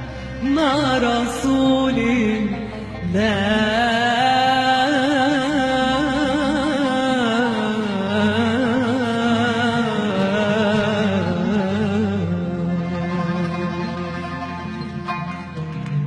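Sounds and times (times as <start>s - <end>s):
man singing melismatic line: 0.4s - 14.2s.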